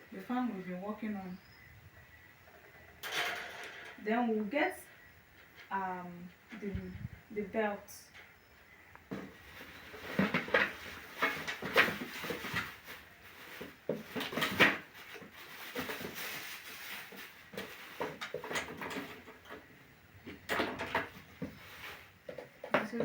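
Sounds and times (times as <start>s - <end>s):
plastic parts clicking and knocking: 17.6s - 21.5s, 22.3s - 23.0s.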